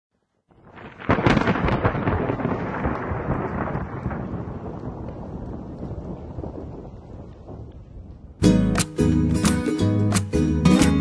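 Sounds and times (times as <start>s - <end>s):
loud crackling crash rumbling: 0.5s - 8.4s.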